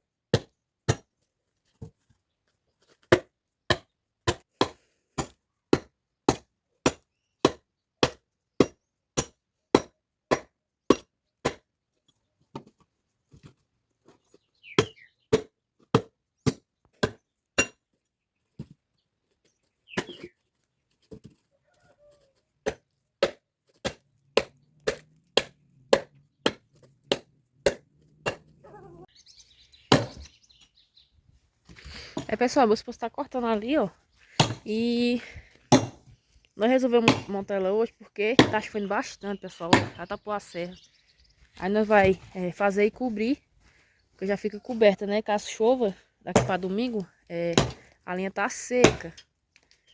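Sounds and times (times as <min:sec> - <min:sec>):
chopping firewood: 0:00.3 - 0:02.0, 0:02.8 - 0:18.8, 0:19.4 - 0:20.4, 0:22.6 - 0:28.9, 0:29.8 - 0:30.3, 0:34.3 - 0:36.2, 0:37.0 - 0:37.4, 0:38.4 - 0:38.8, 0:39.7 - 0:40.1, 0:46.3 - 0:48.0, 0:48.7 - 0:49.2.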